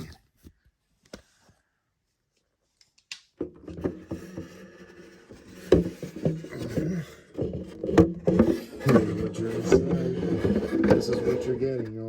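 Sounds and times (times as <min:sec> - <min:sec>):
plastic container rubbing and clicks: 0:03.4 - 0:12.0.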